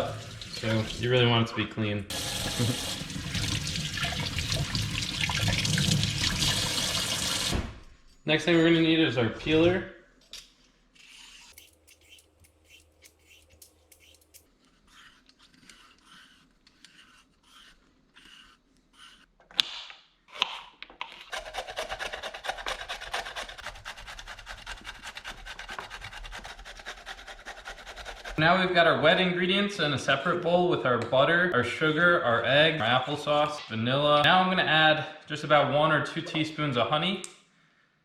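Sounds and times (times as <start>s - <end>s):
vegetable peeler scraping vegetable: 10.9s - 19.3s, 20.3s - 28.4s.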